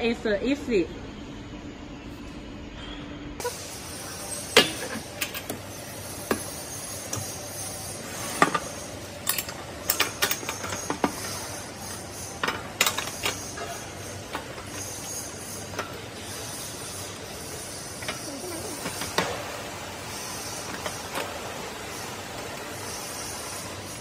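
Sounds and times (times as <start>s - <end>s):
compressed air hissing: 3.4s - 9.0s.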